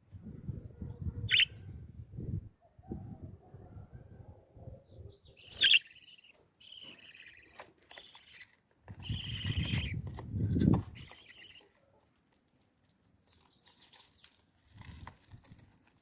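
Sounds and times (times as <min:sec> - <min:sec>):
baby parrots squawking and chirping: 0:01.3 - 0:01.5, 0:05.4 - 0:08.4, 0:09.0 - 0:10.0, 0:11.0 - 0:11.7.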